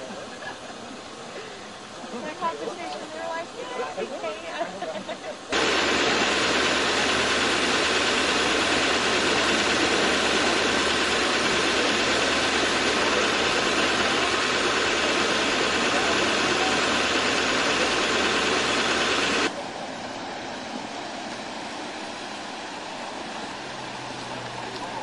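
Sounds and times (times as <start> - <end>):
engine idling: 5.5 - 19.6.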